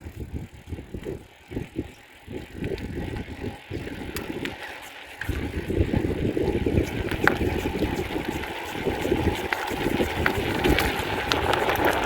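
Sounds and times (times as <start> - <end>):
bicycle clicks and rattles: 0.0 - 12.0
wind rumbling on microphone: 0.0 - 12.0.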